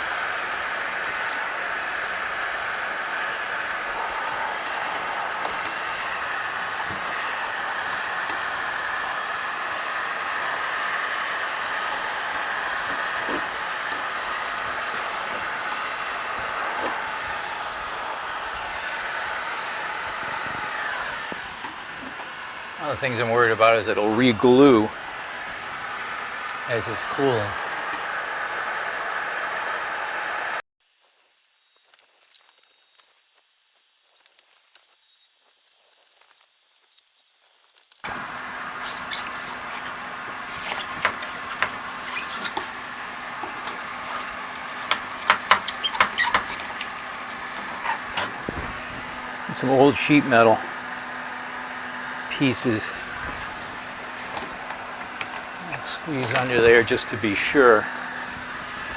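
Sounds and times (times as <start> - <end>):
heat gun blowing: 0.0 - 30.6, 38.0 - 58.9
small ticks and crackles: 31.6 - 38.1.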